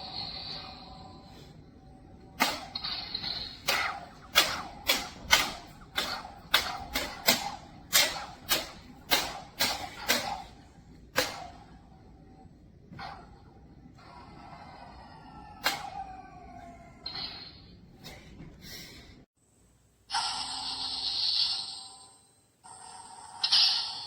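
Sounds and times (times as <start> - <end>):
toy lightsabers clacking: 2.3 - 11.8.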